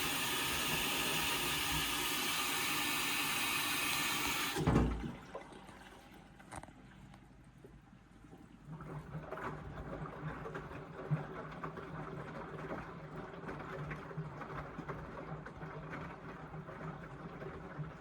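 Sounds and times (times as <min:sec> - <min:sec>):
washing machine motor humming: 0:00.0 - 0:05.2
water sloshing in drum: 0:08.3 - 0:18.0.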